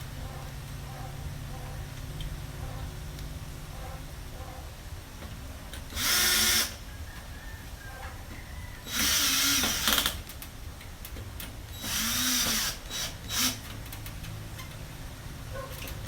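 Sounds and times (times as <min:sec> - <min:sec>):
power screwdriver driving screws: 0:05.9 - 0:06.8, 0:08.8 - 0:10.3, 0:11.8 - 0:14.0.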